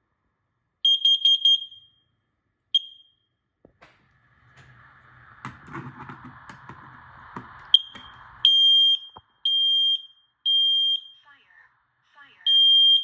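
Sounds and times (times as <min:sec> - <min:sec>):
high-pitched alarm beeps: 0:00.9 - 0:02.0, 0:02.8 - 0:03.3, 0:07.8 - 0:11.3, 0:12.5 - 0:13.0.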